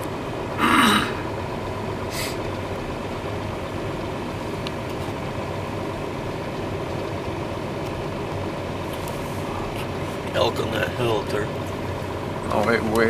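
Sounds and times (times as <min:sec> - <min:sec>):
engine and road noise in cab: 0:00.0 - 0:13.0.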